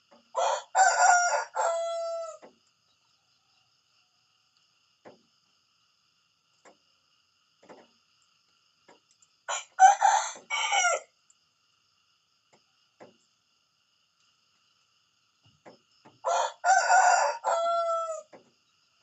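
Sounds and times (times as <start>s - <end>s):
rooster crowing: 0.3s - 2.5s, 9.5s - 11.1s, 16.2s - 18.4s.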